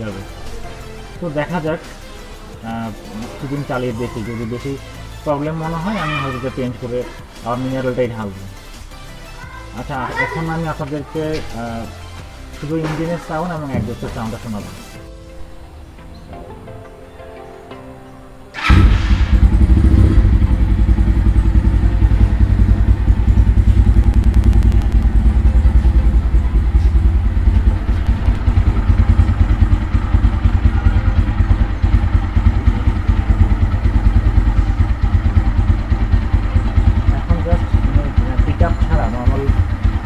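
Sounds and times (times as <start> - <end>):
engine tappet noise: 18.6 - 40.0
motorcycle engine idling: 18.6 - 40.0.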